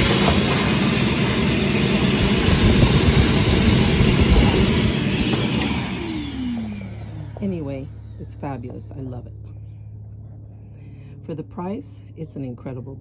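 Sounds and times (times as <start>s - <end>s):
shop vacuum sucking up water: 0.0s - 7.1s
motor winding down whine: 0.0s - 8.8s.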